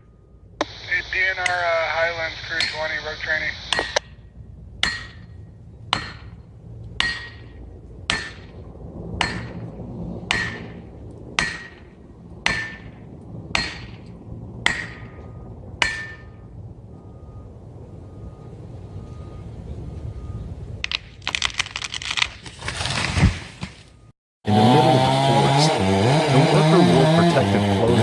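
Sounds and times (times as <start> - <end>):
low steady rumble: 0.0 - 20.9.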